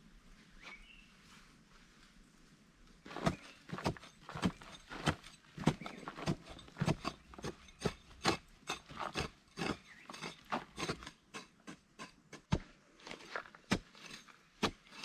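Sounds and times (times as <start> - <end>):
sharp knocks and scrapes: 3.1 - 15.0.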